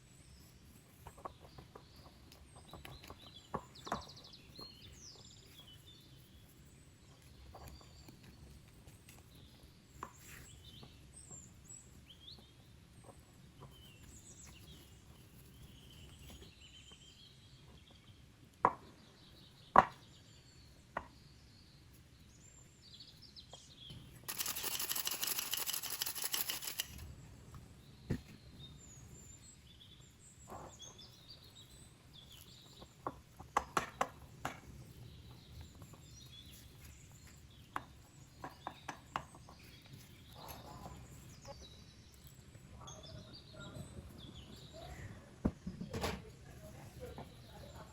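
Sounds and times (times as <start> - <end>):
faint birds chirping: 0.0 - 33.6, 34.2 - 47.9
noisy rattling: 24.3 - 27.0
utensils knocking and clicking: 24.3 - 27.0.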